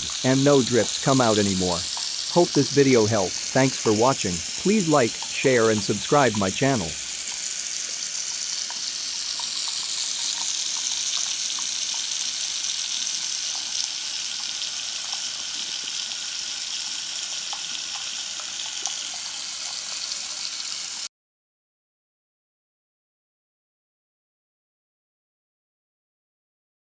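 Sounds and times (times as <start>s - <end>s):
tap water running into sink: 0.0s - 21.0s.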